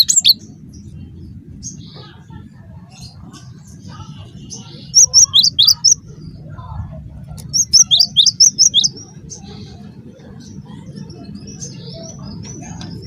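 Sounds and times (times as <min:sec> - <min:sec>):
bird singing whistled notes: 0:00.0 - 0:00.4, 0:04.6 - 0:06.0, 0:07.4 - 0:09.1
steady low hum: 0:00.0 - 0:13.0.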